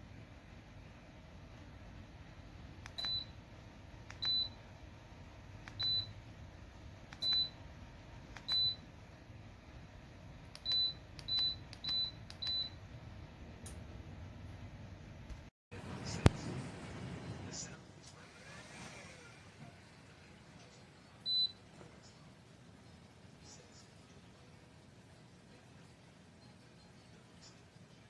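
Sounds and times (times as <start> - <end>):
heater control beeps: 2.8 - 3.4, 4.0 - 4.7, 5.6 - 6.2, 7.1 - 7.7, 8.4 - 8.9, 10.5 - 12.9, 21.2 - 21.7.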